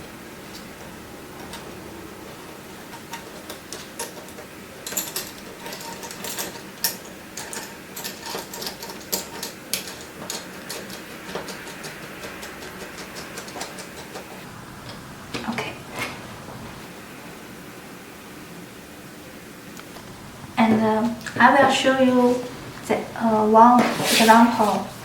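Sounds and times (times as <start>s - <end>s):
conduit fittings clicking and rattling: 2.3s - 14.4s.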